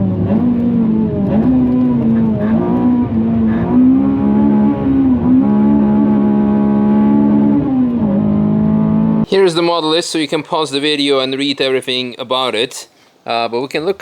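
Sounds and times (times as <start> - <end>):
car engine at high revs: 0.0 - 9.3.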